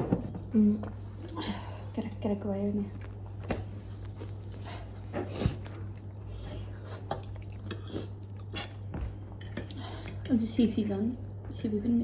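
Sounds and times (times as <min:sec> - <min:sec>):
low electrical hum: 0:00.0 - 0:12.0
person chewing: 0:02.9 - 0:10.2.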